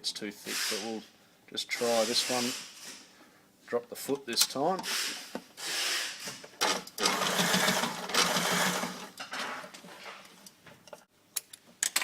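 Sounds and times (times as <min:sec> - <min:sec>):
sewing machine stitching: 0:06.6 - 0:09.1.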